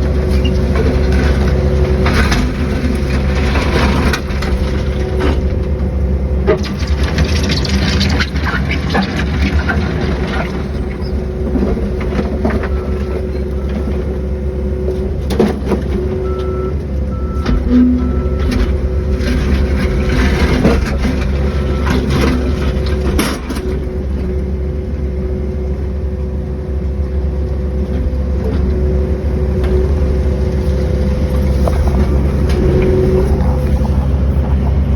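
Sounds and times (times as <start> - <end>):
excavator engine running: 0.0 - 34.9
sharp knocks and scrapes: 31.3 - 34.9.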